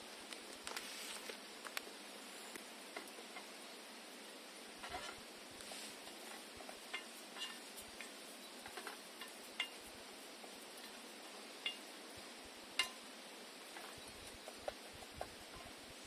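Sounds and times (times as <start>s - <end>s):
faint steady hiss: 0.0s - 16.0s
metal cookware clinking: 6.9s - 7.7s, 11.6s - 11.9s, 12.8s - 13.0s.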